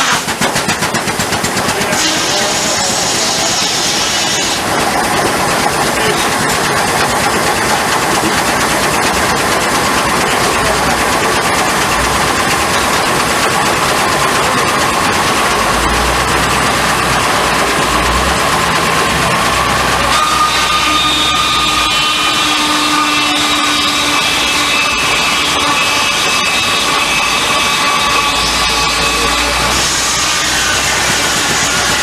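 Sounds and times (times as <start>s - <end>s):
sawmill machinery clatter: 0.0s - 32.0s
machinery whine rising in pitch: 1.8s - 32.0s.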